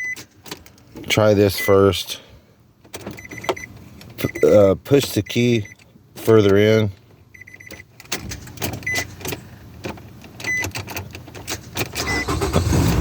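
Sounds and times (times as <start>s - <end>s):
car starter cranking: 11.4s - 13.0s.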